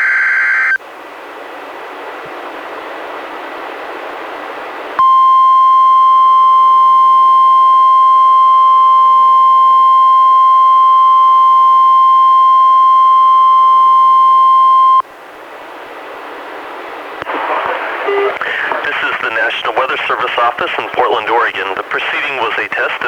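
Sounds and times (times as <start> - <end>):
radio receiver hiss: 17.2 - 23.0.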